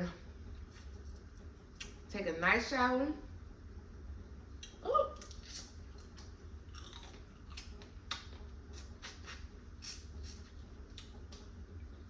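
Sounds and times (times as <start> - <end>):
person chewing wetly: 4.6 - 11.2.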